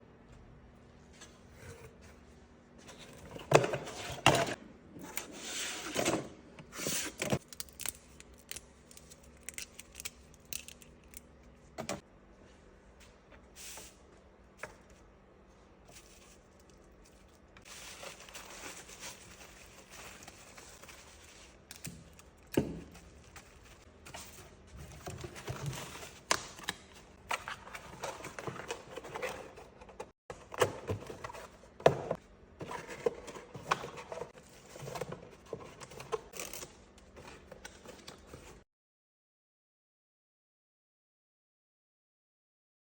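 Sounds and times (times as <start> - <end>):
rustling and scraping: 15.8 - 21.6.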